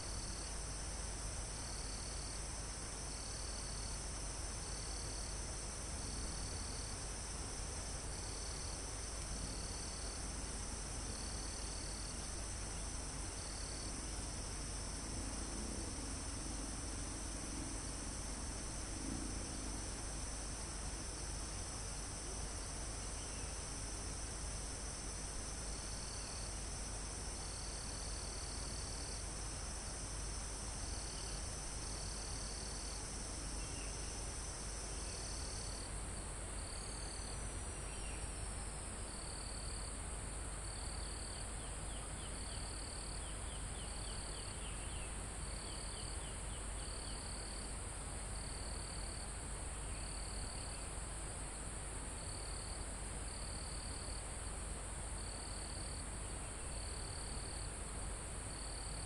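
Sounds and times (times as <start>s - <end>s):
cricket chirping trills: 0.0s - 59.0s
low background hiss: 0.0s - 59.0s
shrill insect buzz: 16.2s - 35.9s.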